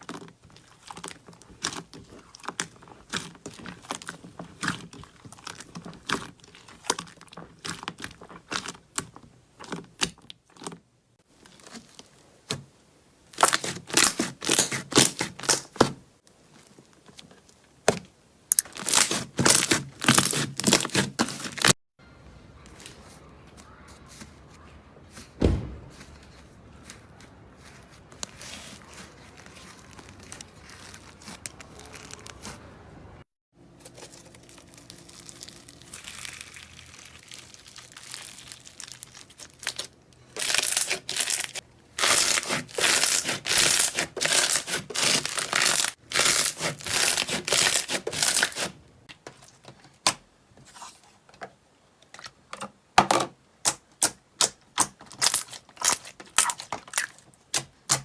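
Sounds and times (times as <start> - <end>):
slime squishing and crunching: 0.0 - 12.6, 13.3 - 16.0, 17.8 - 21.8, 25.6 - 32.9, 33.7 - 48.8, 53.6 - 58.0.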